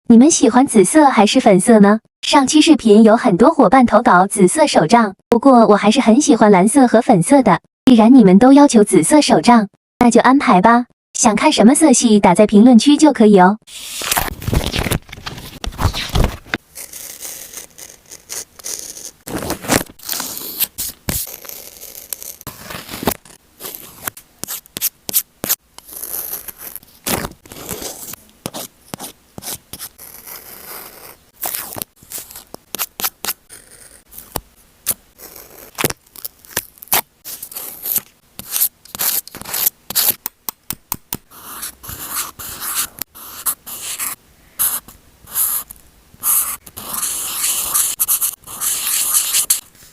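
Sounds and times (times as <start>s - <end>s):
paper scraping and rubbing: 13.7s - 40.2s, 41.4s - 49.7s.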